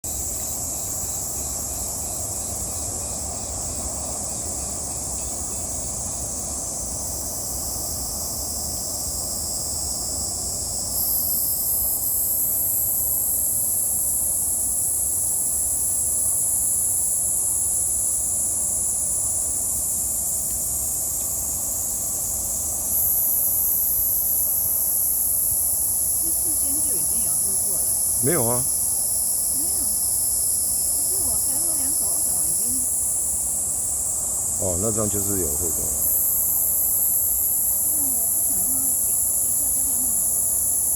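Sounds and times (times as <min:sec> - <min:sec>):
insects buzzing: 0:00.0 - 0:40.9.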